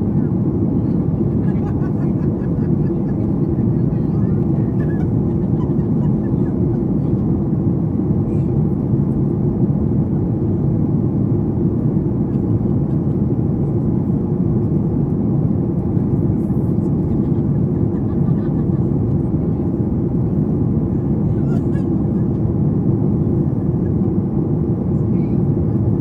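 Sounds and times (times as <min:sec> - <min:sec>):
airplane cabin rumble: 0:00.0 - 0:26.0.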